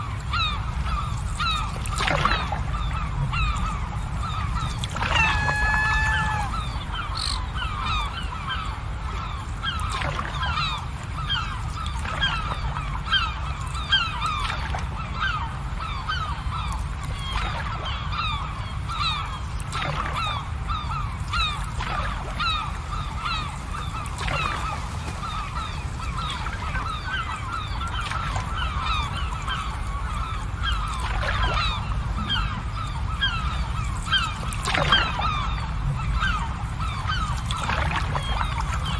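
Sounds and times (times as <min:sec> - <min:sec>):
flock of birds honking: 0:00.3 - 0:11.5.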